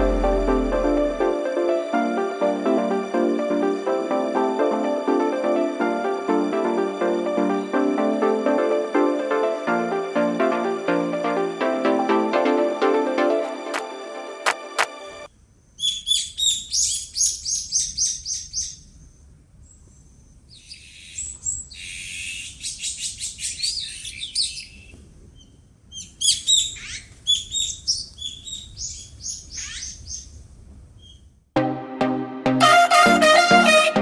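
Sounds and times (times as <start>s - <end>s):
faint low rumble: 0.0s - 1.5s.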